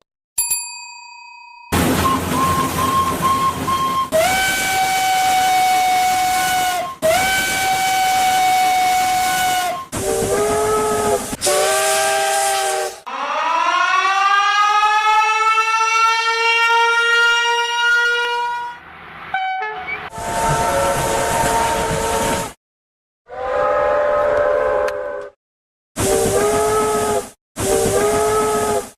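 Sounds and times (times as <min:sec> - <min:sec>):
train horn blasts: 0:03.6 - 0:13.1, 0:16.7 - 0:22.5, 0:23.3 - 0:25.4, 0:26.0 - 0:28.9.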